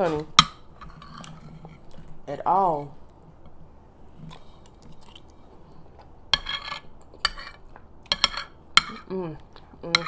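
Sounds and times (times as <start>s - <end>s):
utensil clinking against a dish: 6.4s - 9.1s.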